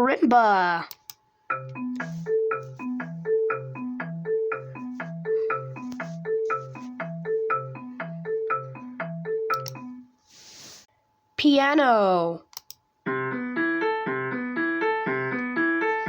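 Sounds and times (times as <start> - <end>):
alarm melody on marimba: 1.5 - 10.1.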